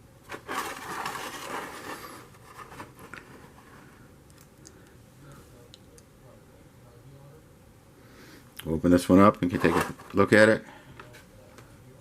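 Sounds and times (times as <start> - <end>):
packaging scraping and rustling: 0.3 - 3.9, 9.4 - 10.3.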